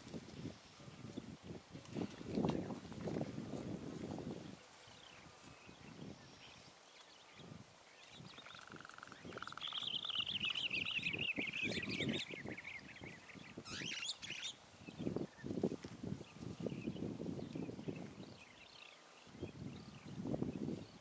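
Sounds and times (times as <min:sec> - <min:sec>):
bird calls: 0:04.9 - 0:15.5.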